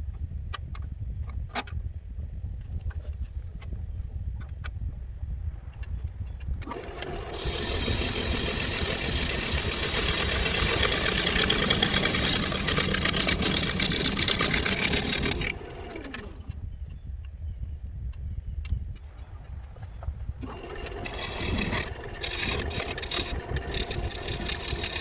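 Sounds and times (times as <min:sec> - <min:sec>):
power tool whirring: 0:06.6 - 0:16.6, 0:20.4 - 0:25.0.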